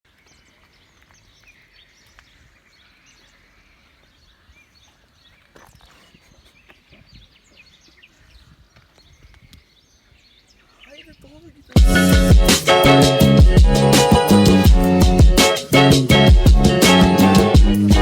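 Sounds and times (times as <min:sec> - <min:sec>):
birds chirping: 0:00.1 - 0:18.0.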